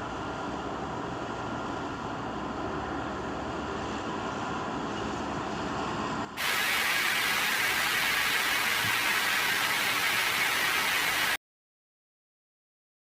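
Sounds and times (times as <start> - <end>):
dull hissing noise: 6.4 - 11.4
loud television static: 6.4 - 11.4.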